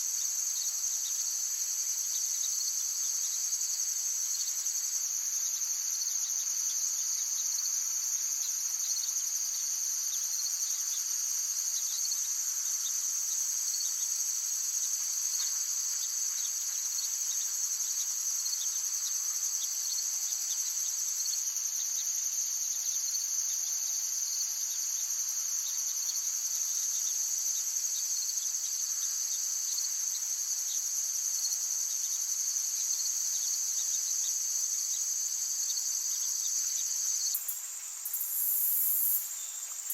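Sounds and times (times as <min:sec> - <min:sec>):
insects chorus shrilling: 0:28.2 - 0:39.9.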